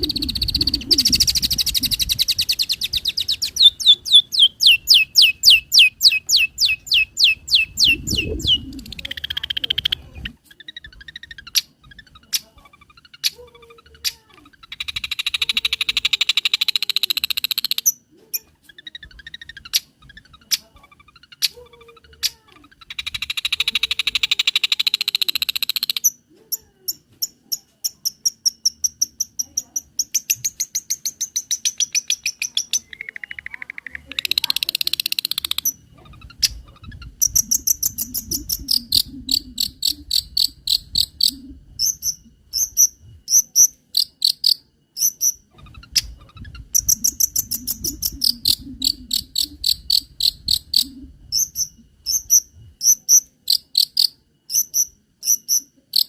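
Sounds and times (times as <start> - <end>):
fast sharp bird chirps: 0.0 - 10.0
rapid buzzy bird trill: 0.0 - 26.2, 26.9 - 56.0.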